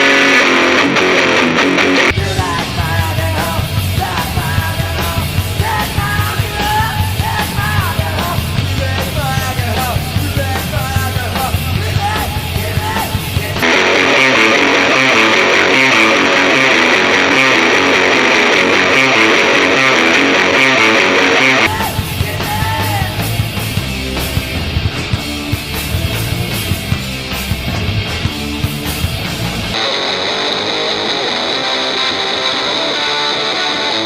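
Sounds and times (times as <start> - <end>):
shouted singing: 0.0 - 23.4
distorted electric guitar chords: 0.0 - 34.0
punk rock band playing: 0.0 - 34.0.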